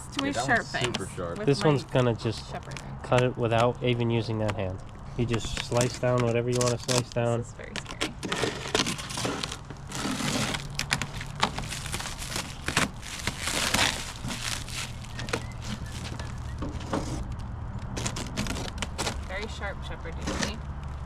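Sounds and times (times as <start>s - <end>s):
cardboard and wrapping crinkling: 0.2s - 21.0s
blade cutting cardboard: 8.2s - 11.0s
cardboard packaging pulled apart: 8.2s - 17.4s, 18.0s - 19.3s.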